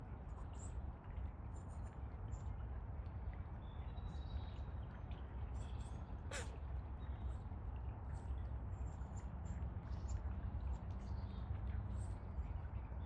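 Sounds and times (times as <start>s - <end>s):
crane sneezing snort: 6.3s - 6.6s.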